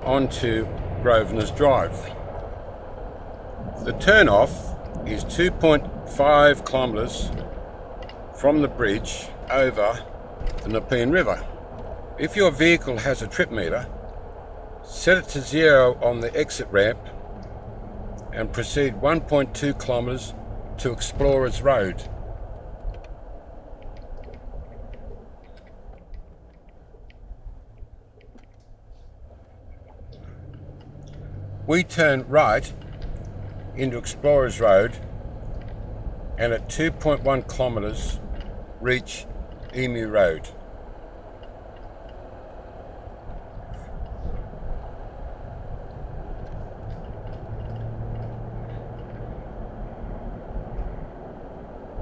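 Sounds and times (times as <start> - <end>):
car driving on road: 0.0 - 52.0
low hum: 0.0 - 52.0
light clicks: 32.6 - 51.9.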